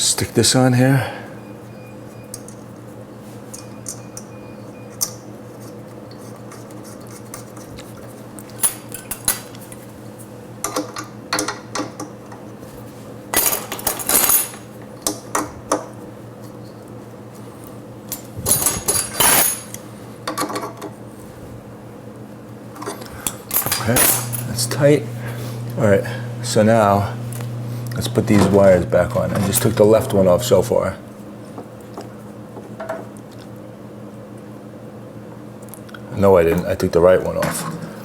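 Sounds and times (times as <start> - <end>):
steady low hum: 0.0 - 38.0
metal tools clinking: 18.1 - 19.8, 22.8 - 24.8.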